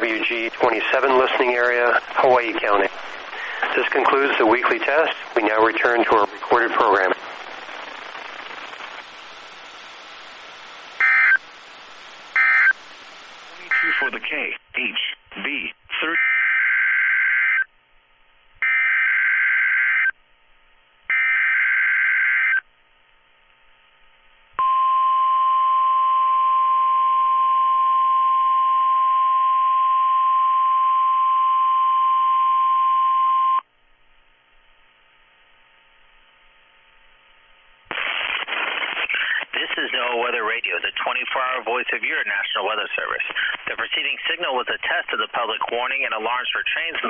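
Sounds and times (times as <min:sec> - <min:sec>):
data burst screech: 0:11.0 - 0:11.4, 0:12.4 - 0:12.8, 0:13.6 - 0:14.2
steady warning alarm tone: 0:11.0 - 0:11.5, 0:12.3 - 0:12.8, 0:13.6 - 0:14.2, 0:18.6 - 0:20.2, 0:21.1 - 0:22.6.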